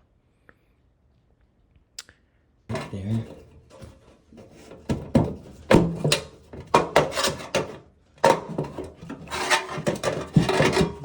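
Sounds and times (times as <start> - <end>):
clattering knocks and clicks of fan housing: 3.7 - 11.0.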